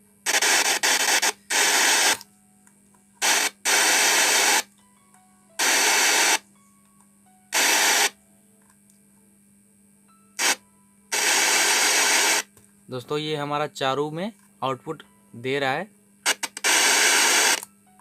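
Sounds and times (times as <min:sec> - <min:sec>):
loud static hiss bursts: 0:00.0 - 0:02.2, 0:03.2 - 0:04.7, 0:05.6 - 0:06.4, 0:07.5 - 0:08.2, 0:10.4 - 0:12.5, 0:16.2 - 0:17.6
faint steady hum: 0:00.0 - 0:18.0.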